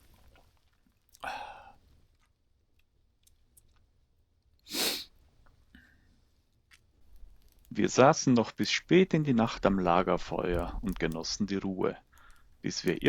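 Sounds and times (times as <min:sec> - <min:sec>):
person breathing out: 0:01.2 - 0:01.8, 0:04.7 - 0:05.1
campfire crackling: 0:06.2 - 0:13.0.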